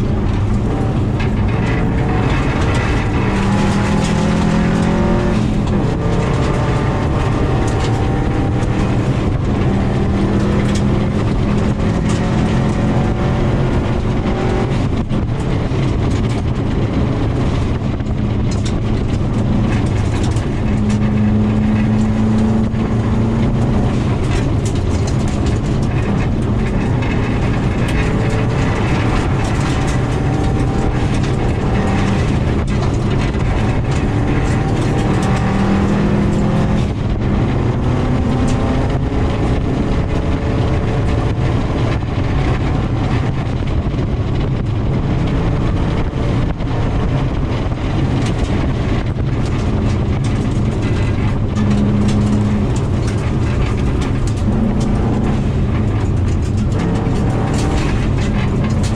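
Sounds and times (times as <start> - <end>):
car engine revving: 0.0 - 58.9
tyres on gravel: 47.4 - 58.9
stones clicking: 51.6 - 58.9.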